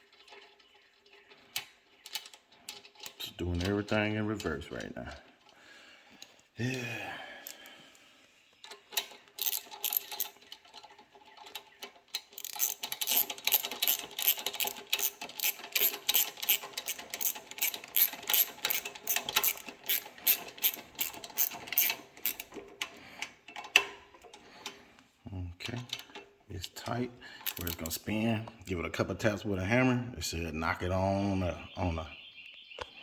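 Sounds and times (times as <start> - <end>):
ratchet wrench clicking: 9.4 - 10.3, 12.4 - 22.5, 27.4 - 28.0.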